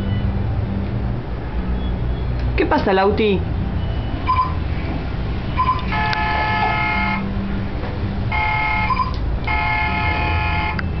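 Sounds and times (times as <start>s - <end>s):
horn-like tone: 5.5s - 7.3s, 8.3s - 11.0s.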